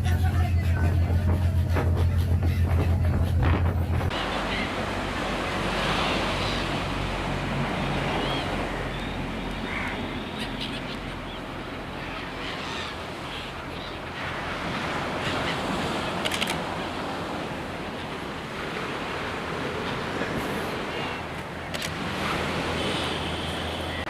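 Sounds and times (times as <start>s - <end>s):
steady rushing outdoor noise: 0.0s - 24.0s.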